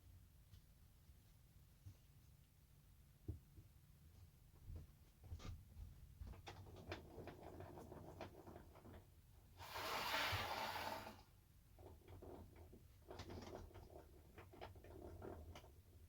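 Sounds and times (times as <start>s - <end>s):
scraping slide: 9.6s - 11.2s.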